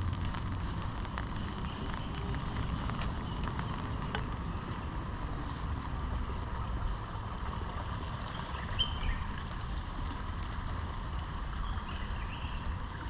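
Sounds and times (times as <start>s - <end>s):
drops ticking: 0.0s - 5.2s
low rumble: 0.0s - 13.0s
steady rain: 0.0s - 13.0s.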